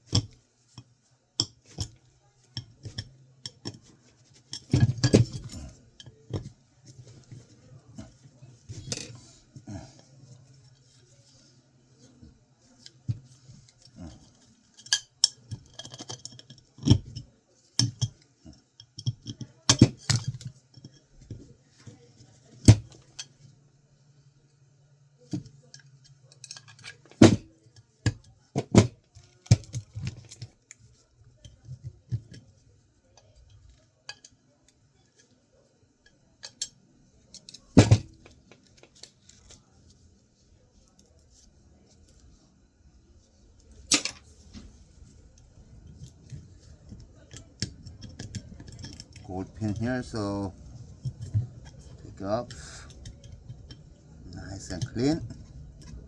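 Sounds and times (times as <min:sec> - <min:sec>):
low steady hum: 0:36.3 - 0:56.0.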